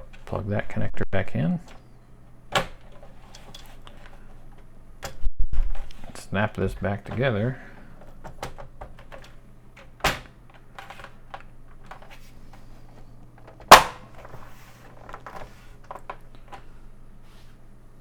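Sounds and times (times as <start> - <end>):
small clicks and handling noise: 1.6 - 17.6
plastic case snapping together: 2.5 - 5.2, 7.9 - 16.7.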